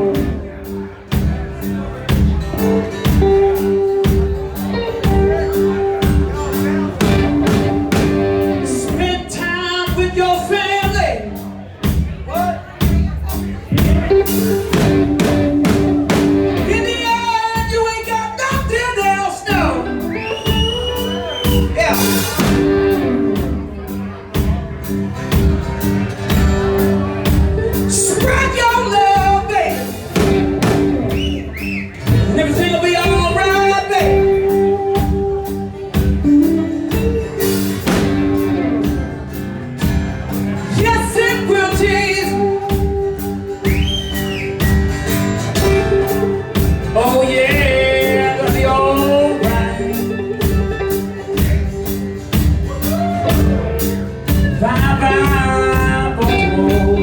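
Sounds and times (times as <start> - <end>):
bending guitar lead line: 0.0 - 57.0
blues-rock band playing: 0.0 - 57.0
drum kit beat: 0.0 - 57.0.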